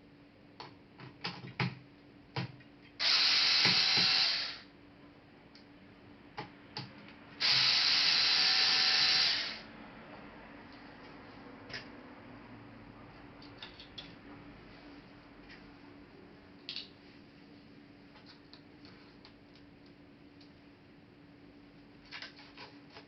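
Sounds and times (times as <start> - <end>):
electric screwdriver running: 3.0 - 4.6, 7.4 - 9.6.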